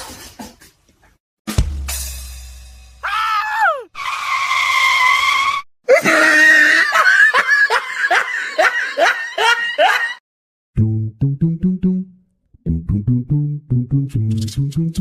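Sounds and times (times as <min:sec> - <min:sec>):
person screaming: 0:03.0 - 0:04.0, 0:05.9 - 0:07.1
short laughing cries: 0:05.9 - 0:10.1.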